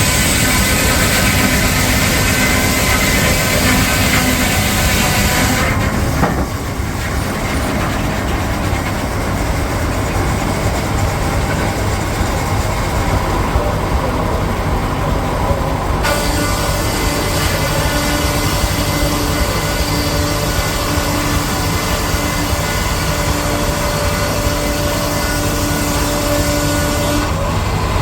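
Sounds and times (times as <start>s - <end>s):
steam engine running: 0.0s - 28.0s.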